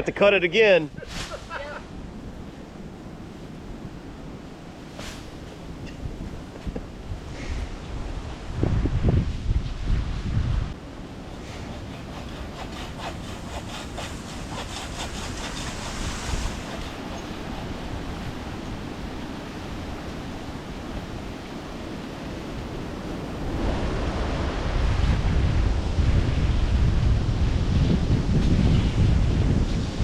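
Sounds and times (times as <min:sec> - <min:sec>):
wind buffeting microphone: 0:00.9 - 0:30.0
short scratchy strokes: 0:11.3 - 0:18.1.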